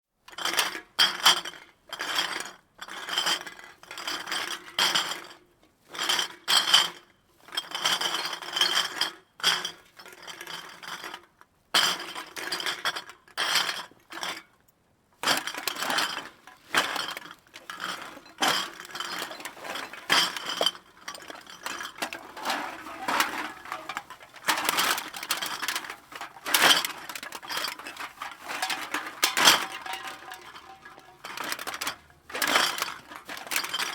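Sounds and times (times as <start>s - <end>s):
glass bottles clinking together: 15.4s - 33.9s.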